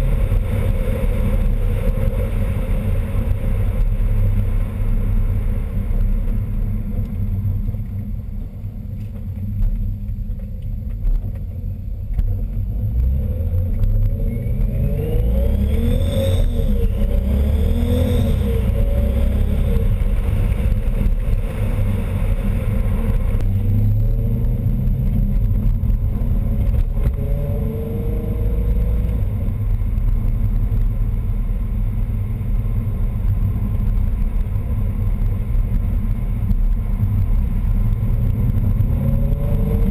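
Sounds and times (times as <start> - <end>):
car engine idling and revving: 0.0 - 39.9
high supercharger whine: 0.0 - 39.9.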